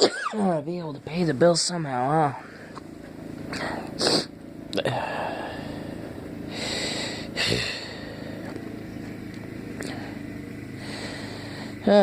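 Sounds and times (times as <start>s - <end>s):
man sniffing through nose: 3.5s - 4.3s, 5.3s - 8.5s
short snort: 3.5s - 4.3s, 6.6s - 8.2s.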